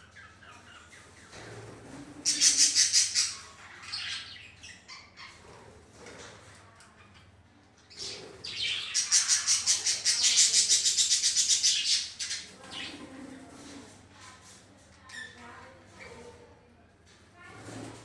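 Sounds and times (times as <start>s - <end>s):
parakeets chirping: 2.2s - 5.5s, 7.1s - 13.0s.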